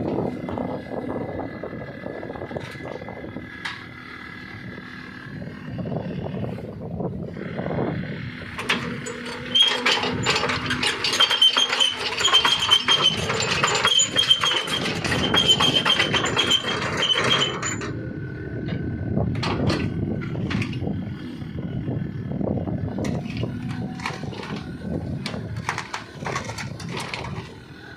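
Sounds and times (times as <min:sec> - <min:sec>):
excavator engine running: 0:00.0 - 0:27.9
excavator tracks clanking: 0:02.5 - 0:04.0, 0:08.4 - 0:21.3, 0:22.8 - 0:27.9
high squeal: 0:09.0 - 0:17.9.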